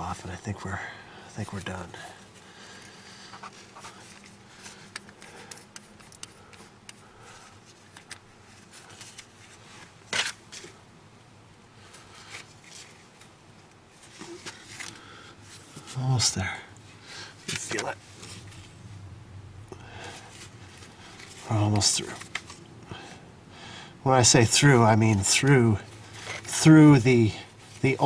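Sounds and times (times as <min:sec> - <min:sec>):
hand tap scraping and clicking: 0:04.9 - 0:07.0.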